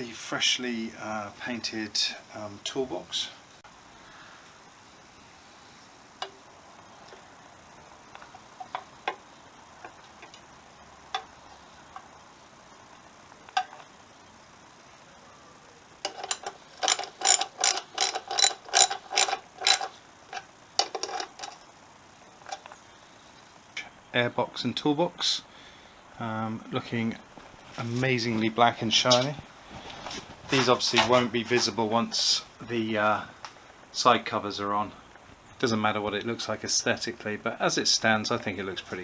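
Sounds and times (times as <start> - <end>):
parts clicking and knocking: 16.0 - 21.7
ratchet wrench clicking: 16.1 - 19.9, 20.8 - 21.6.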